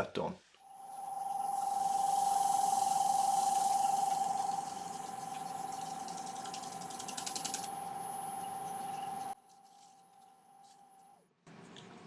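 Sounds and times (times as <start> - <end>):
wood lathe motor whine: 0.6 - 9.4
rapid mechanical clicks: 5.0 - 7.8.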